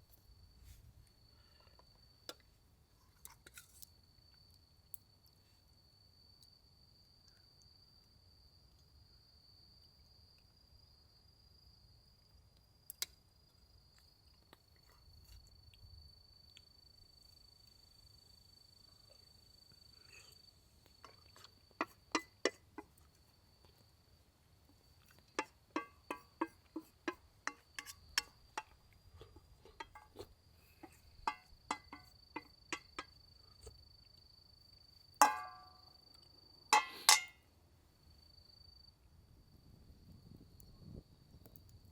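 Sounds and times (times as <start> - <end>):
high-pitched insect trill: 24.8 - 37.4.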